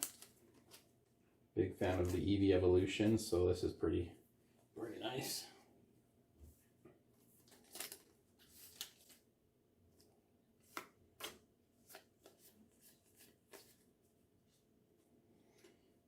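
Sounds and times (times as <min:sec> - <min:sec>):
cards rustling: 0:00.0 - 0:01.0, 0:01.8 - 0:02.4, 0:07.4 - 0:09.3, 0:09.9 - 0:13.9.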